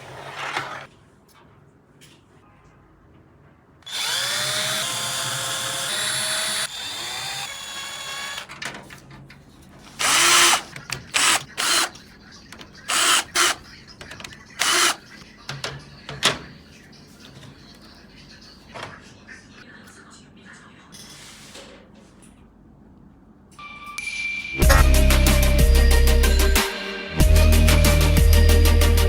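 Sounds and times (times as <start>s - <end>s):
electric screwdriver driving screws: 3.9s - 8.5s, 10.0s - 12.0s, 12.9s - 13.6s, 14.6s - 15.0s.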